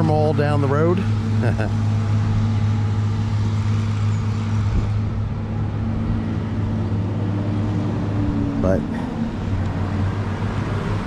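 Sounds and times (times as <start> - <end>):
vehicle engine idling: 0.0 - 7.4, 8.0 - 11.0
road traffic noise: 0.0 - 11.0.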